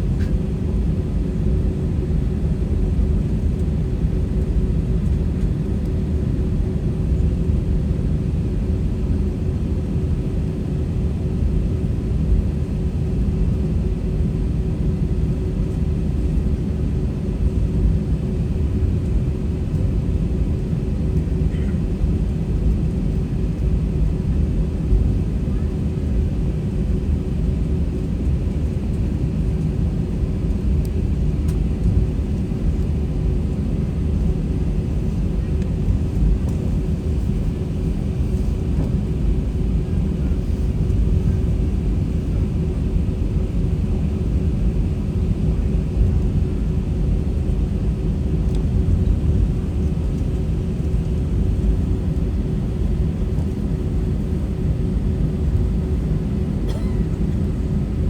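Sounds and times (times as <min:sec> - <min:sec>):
jet engine cabin rumble: 0:00.0 - 0:58.0.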